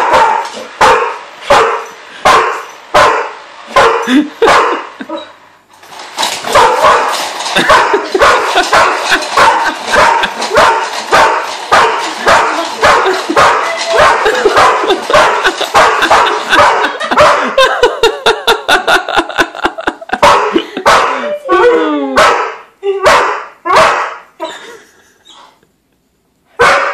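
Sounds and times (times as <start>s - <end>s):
dog barking and yipping: 0.0s - 5.2s, 6.3s - 17.6s, 20.2s - 21.3s, 22.2s - 25.5s, 26.6s - 26.9s.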